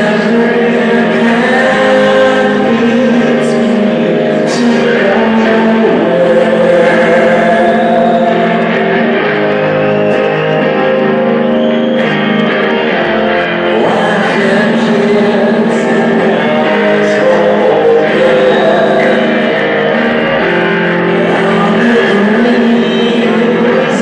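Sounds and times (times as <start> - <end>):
person singing: 0.0 - 9.2, 13.5 - 24.0
guitars: 0.0 - 24.0
rock band playing live: 0.0 - 24.0.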